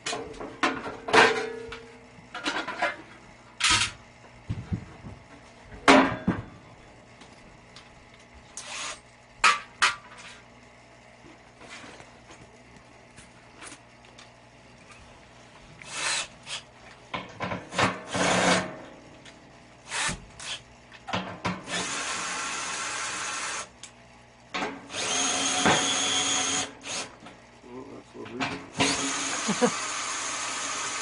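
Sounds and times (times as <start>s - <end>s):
drill driving screws into sheet metal: 8.6s - 9.0s, 15.8s - 16.6s, 17.7s - 18.7s, 19.8s - 20.6s, 21.6s - 23.7s, 24.9s - 27.2s, 28.7s - 31.0s.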